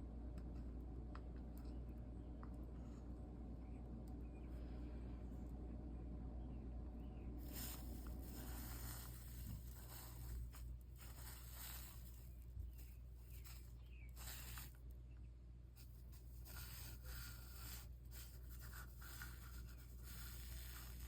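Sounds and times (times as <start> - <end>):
steady low hum: 0.0 - 21.0
faint scratching and rubbing: 7.4 - 14.9, 15.8 - 21.0.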